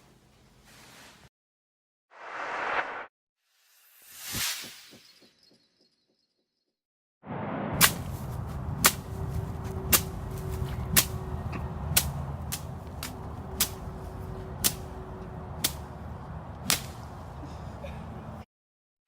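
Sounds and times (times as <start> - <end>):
steady low rumble: 7.3 - 18.4
sharp cracks: 7.7 - 9.2, 16.7 - 17.0.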